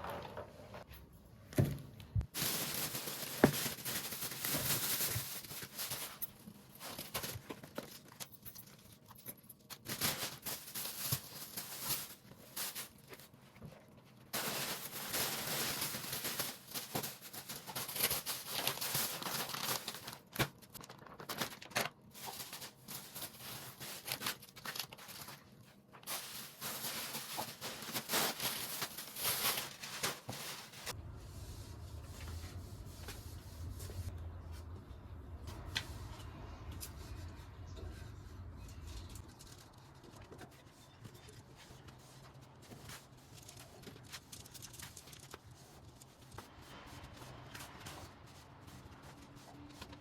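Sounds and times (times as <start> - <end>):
rustling and crinkling: 0.0 - 34.8, 35.4 - 50.0
steady low hum: 30.5 - 41.3.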